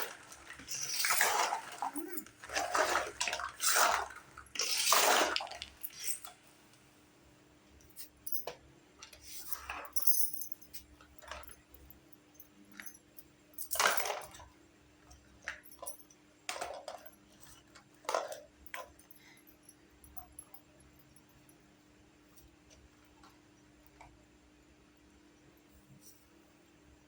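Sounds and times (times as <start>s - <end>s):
plastic toy pieces clattering: 0.0s - 6.4s.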